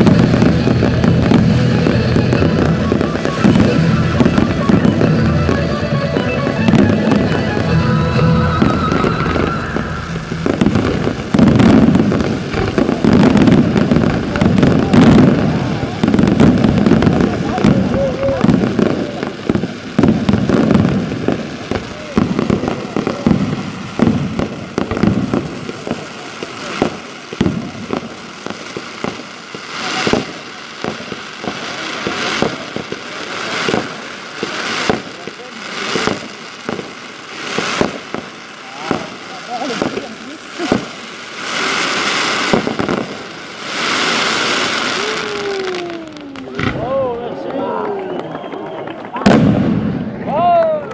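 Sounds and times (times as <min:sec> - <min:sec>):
fireworks bursting and crackling: 0:00.0 - 0:50.9
music: 0:01.7 - 0:10.4.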